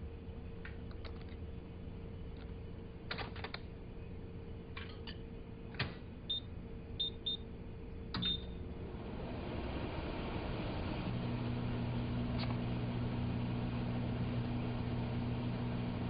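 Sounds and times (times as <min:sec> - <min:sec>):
low hum: 0:00.0 - 0:16.0
microwave oven running hiss: 0:00.0 - 0:16.0
keypad beeps: 0:06.3 - 0:07.4, 0:08.2 - 0:08.5.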